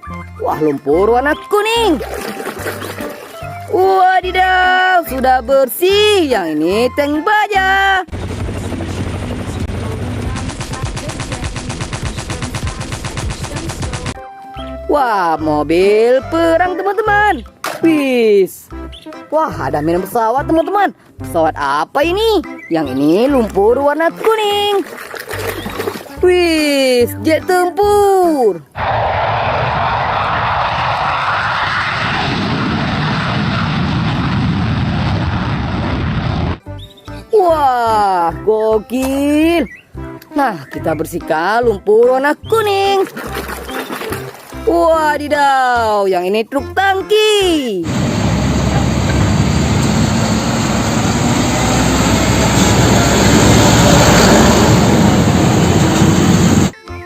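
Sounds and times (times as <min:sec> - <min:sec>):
truck engine and road noise: 0:08.1 - 0:11.4, 0:47.8 - 0:56.8
jet engine roar: 0:28.8 - 0:36.6, 0:47.8 - 0:56.8.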